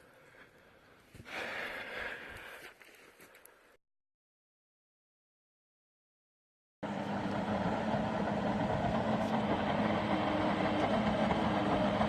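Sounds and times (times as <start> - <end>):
boat engine humming: 6.8 - 12.0.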